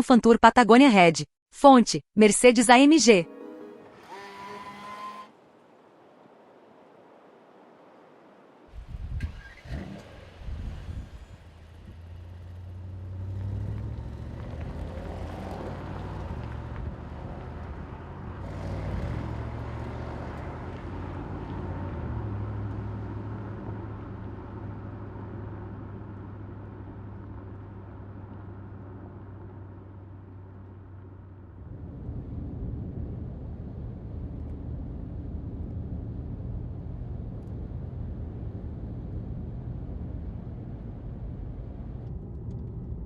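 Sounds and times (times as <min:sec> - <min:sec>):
car engine revving and accelerating: 0:09.3 - 0:29.0.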